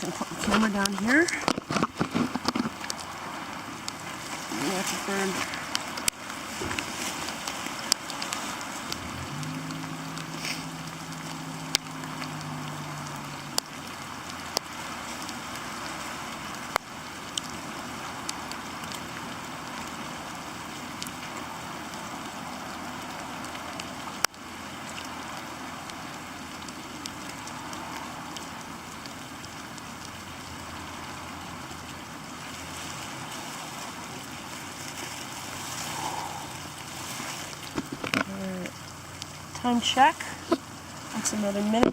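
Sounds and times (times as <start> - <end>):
low two-tone hum: 0.0 - 25.0
steady rain: 0.0 - 41.9.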